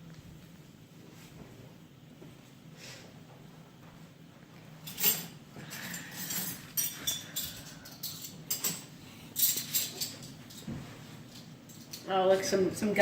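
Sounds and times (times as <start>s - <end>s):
dishes and cutlery clinking: 4.9s - 10.8s.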